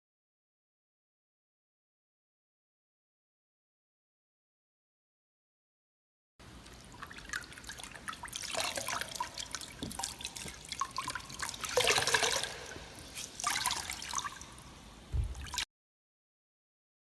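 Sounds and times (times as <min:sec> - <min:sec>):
wet cloth being wrung out: 0:06.6 - 0:15.6
water splashing and dripping: 0:06.6 - 0:15.7.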